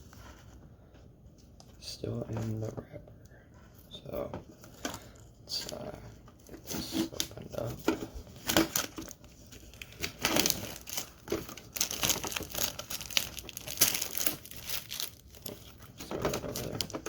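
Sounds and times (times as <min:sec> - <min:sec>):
plastic shrink-wrap crinkling: 0:04.8 - 0:17.0
plastic film tearing: 0:08.4 - 0:17.0.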